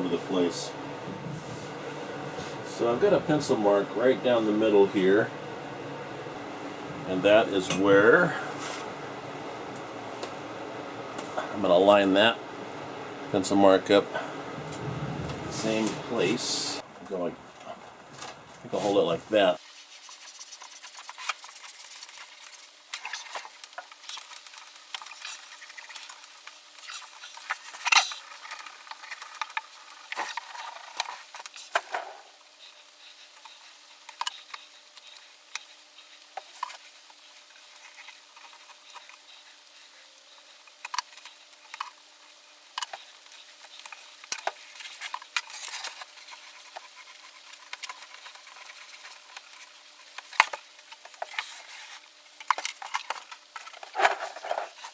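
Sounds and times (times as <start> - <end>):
sheet rustling and crinkling: 29.0 - 54.9.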